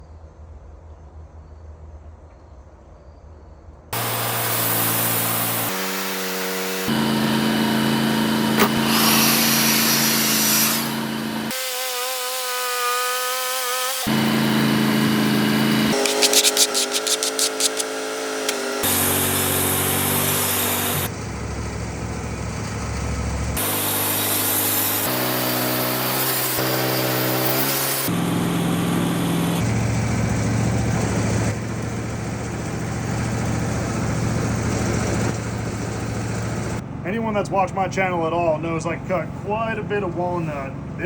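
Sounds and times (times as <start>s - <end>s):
band sawmill sawing a log: 4.0s - 36.8s
quick ticks: 15.9s - 18.6s.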